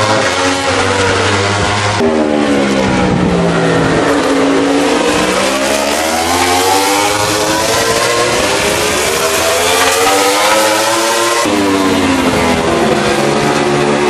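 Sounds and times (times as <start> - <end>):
racing motorcycle engine revving: 0.0 - 14.0.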